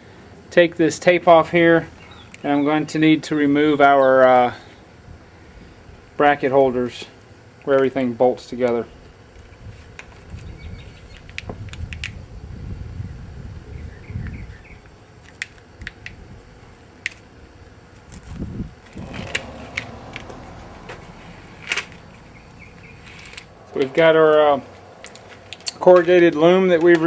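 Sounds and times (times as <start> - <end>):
rustling of tape and plastic: 15.2 - 17.3.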